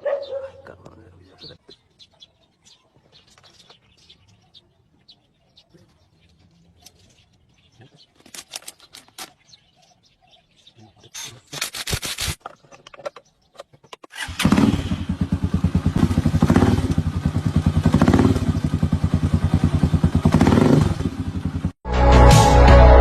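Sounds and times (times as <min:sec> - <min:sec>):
motorcycle engine revving: 0:14.1 - 0:21.8
music: 0:21.8 - 0:23.0.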